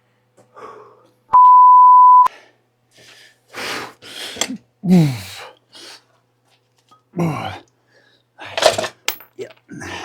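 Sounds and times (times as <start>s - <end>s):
censor bleep: 1.4s - 2.3s
man straining and groaning: 7.2s - 7.7s, 9.7s - 10.0s.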